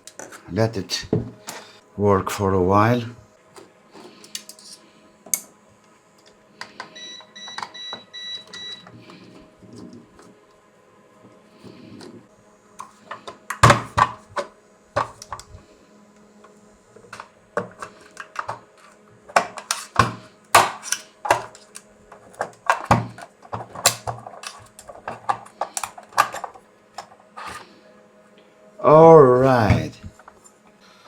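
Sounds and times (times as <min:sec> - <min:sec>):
plastic and metal parts handled: 0:03.6 - 0:04.8, 0:17.0 - 0:27.6
hand tools clicking and tapping: 0:04.2 - 0:05.5, 0:17.1 - 0:27.6.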